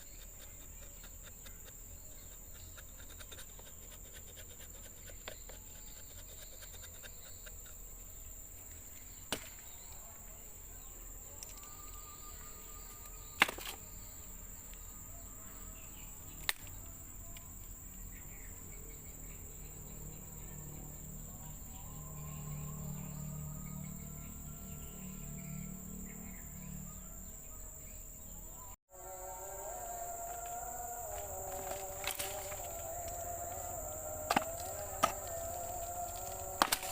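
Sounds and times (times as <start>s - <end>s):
insects droning: 0.0s - 36.9s
low hum: 8.1s - 36.9s.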